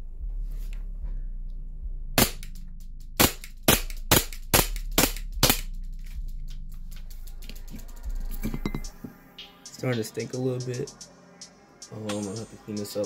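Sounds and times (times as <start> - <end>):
airsoft pistol shots: 2.2 - 2.5, 3.2 - 5.7.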